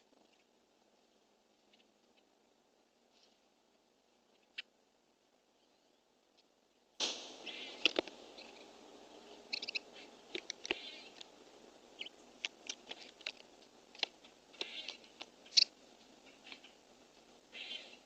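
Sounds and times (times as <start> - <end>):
birds pecking clicks: 7.0 - 16.8.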